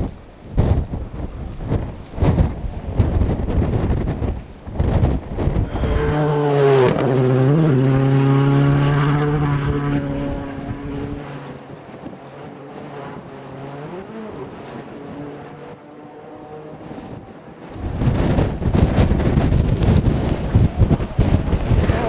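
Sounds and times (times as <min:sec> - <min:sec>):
wind rumble on microphone: 0:00.0 - 0:22.0
rally car engine passing: 0:04.8 - 0:22.0.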